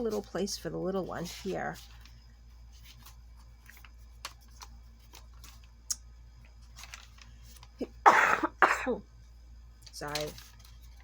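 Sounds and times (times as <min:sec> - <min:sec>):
steady low hum: 0:00.0 - 0:11.0
paper pages clicking: 0:02.8 - 0:07.8, 0:09.8 - 0:11.0.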